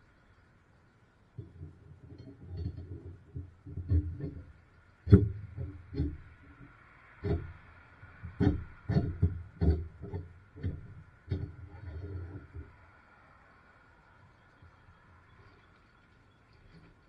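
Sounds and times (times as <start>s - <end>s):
steel u-bolts knocking: 1.4s - 12.8s.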